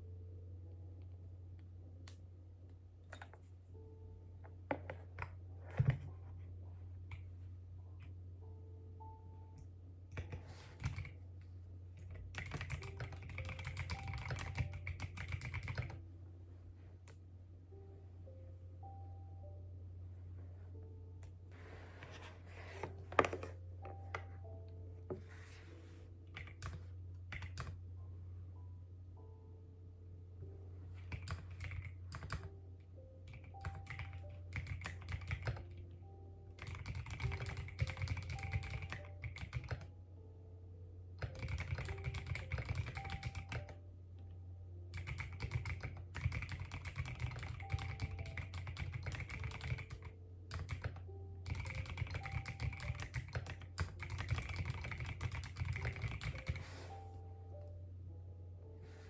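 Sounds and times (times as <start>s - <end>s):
soft background music: 0.0s - 59.0s
fast typing on keyboard: 10.2s - 11.2s, 12.0s - 16.0s, 26.3s - 27.8s, 31.0s - 32.5s, 33.2s - 35.8s, 36.6s - 39.9s, 41.2s - 43.8s, 44.9s - 56.8s.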